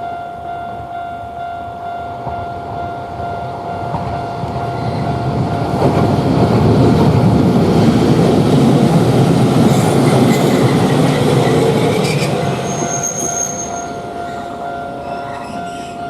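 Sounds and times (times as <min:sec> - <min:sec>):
tram passing: 0:00.0 - 0:16.0
high wheel squeal: 0:09.6 - 0:16.0.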